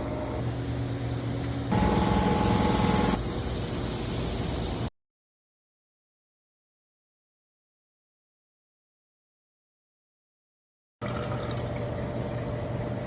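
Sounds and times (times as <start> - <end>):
spray gun hissing: 0.4 - 4.9
steady whine: 1.7 - 3.2.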